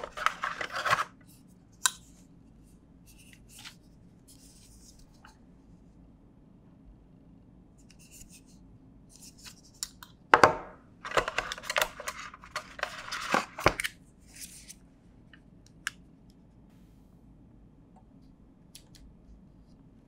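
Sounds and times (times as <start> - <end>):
packaging rustling and scraping: 0.0 - 1.2, 11.1 - 14.8.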